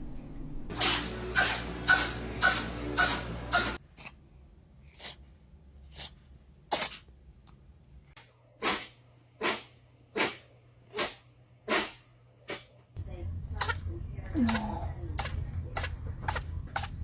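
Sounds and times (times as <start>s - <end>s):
cat sneezing: 0.8s - 3.8s, 5.9s - 7.0s, 8.6s - 12.7s.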